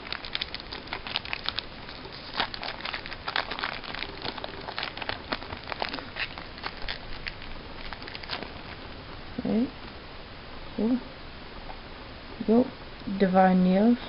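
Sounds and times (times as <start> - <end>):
foil wrapper crinkling: 0.0 - 9.0.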